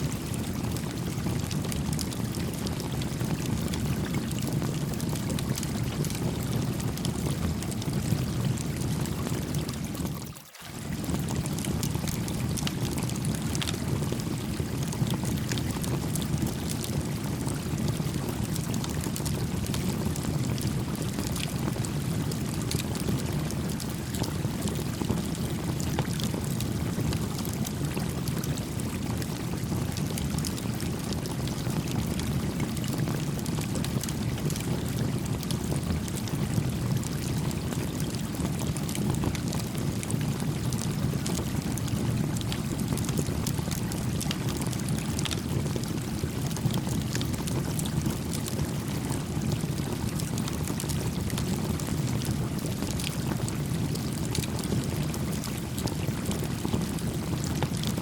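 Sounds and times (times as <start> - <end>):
stream running: 3.8 - 28.1.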